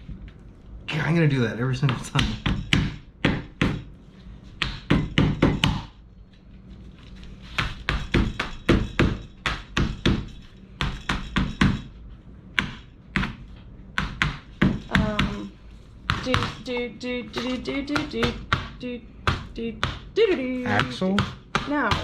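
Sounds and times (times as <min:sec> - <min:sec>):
sharp rhythmic knocks: 0:01.8 - 0:03.9, 0:04.6 - 0:06.0, 0:07.6 - 0:12.0, 0:12.6 - 0:22.0.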